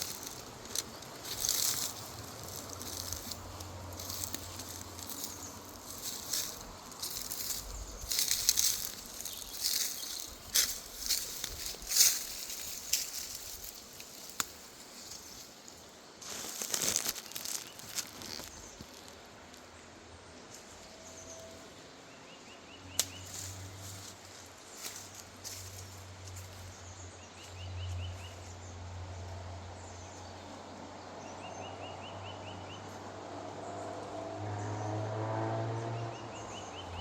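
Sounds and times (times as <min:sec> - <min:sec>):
rustles and clicks: 0:00.0 - 0:19.7.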